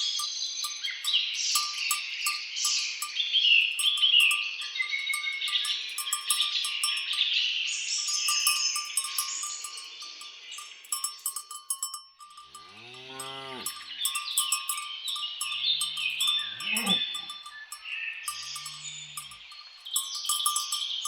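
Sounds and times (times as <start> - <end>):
birds singing: 0.0 - 11.4, 12.4 - 21.0
cowbells clanking: 0.0 - 21.0
cattle mooing: 12.5 - 13.8, 15.5 - 17.4, 18.3 - 19.4.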